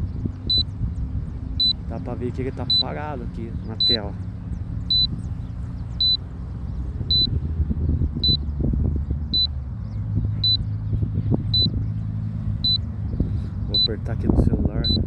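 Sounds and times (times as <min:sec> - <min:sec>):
wind buffeting microphone: 0:00.0 - 0:15.0
high warning beep: 0:01.6 - 0:01.8, 0:02.6 - 0:03.0, 0:03.8 - 0:04.0, 0:04.9 - 0:05.1, 0:06.0 - 0:06.2, 0:07.1 - 0:07.3, 0:12.6 - 0:12.8.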